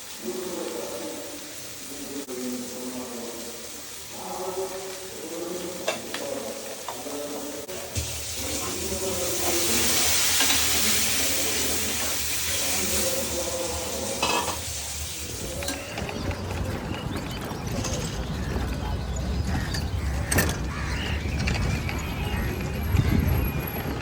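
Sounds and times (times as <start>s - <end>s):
food sizzling in a pan: 0.0s - 16.0s
utensils clinking: 8.0s - 23.1s.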